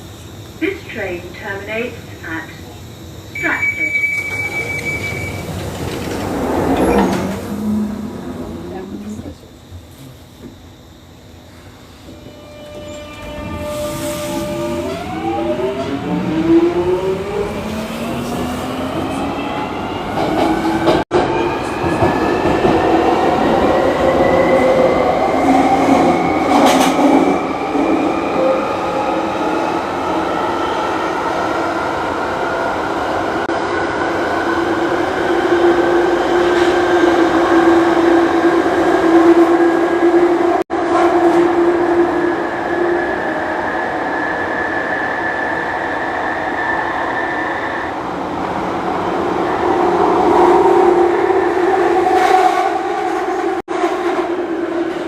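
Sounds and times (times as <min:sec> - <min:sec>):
train traction motors whining: 0:00.0 - 0:30.6.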